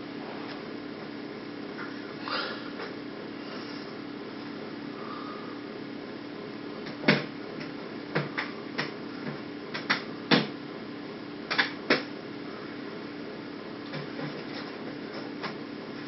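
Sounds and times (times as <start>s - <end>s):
faint steady hum: 0.0s - 16.0s
sharp clicks and knocks: 11.5s - 12.1s.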